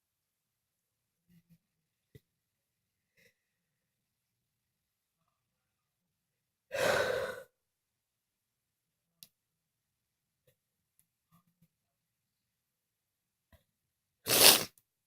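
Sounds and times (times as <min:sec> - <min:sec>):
person sneezing: 0:14.3 - 0:14.7.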